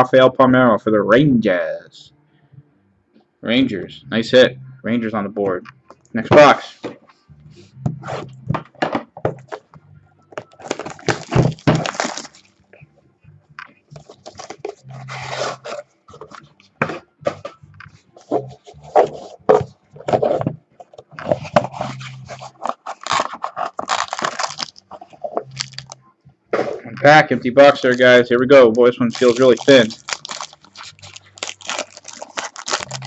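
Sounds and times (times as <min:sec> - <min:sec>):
tearing and crinkling wrapping: 0:10.6 - 0:12.5, 0:14.0 - 0:15.8, 0:21.4 - 0:26.0, 0:27.6 - 0:28.1, 0:29.0 - 0:33.0.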